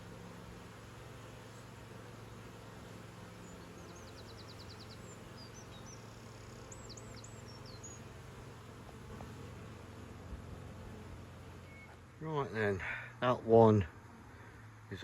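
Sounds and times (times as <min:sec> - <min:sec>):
honeybees humming: 0:00.0 - 0:15.0
small bird singing: 0:03.4 - 0:08.1, 0:11.6 - 0:12.0.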